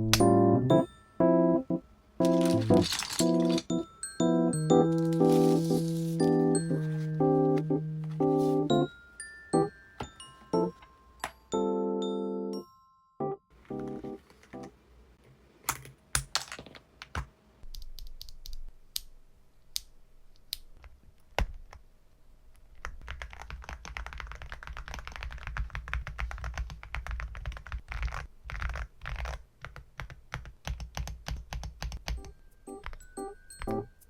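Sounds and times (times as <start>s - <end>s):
mechanical keyboard typing: 2.2s - 3.8s, 22.8s - 33.8s.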